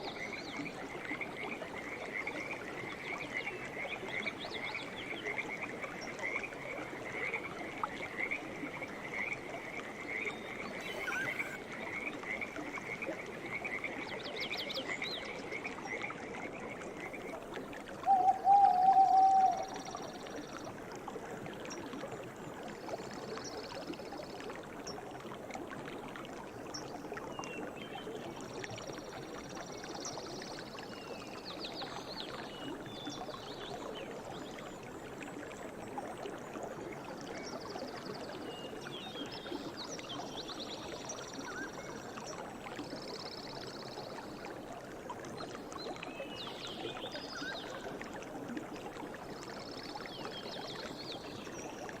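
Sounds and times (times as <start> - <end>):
stream water flowing: 0.0 - 52.0
high bird trills: 10.8 - 11.6
small birds chirping: 10.8 - 11.6.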